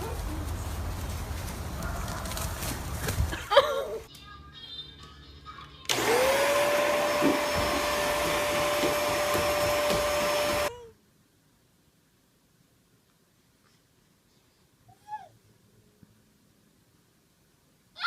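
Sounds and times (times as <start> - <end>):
electric fan motor whine: 5.9 - 10.7.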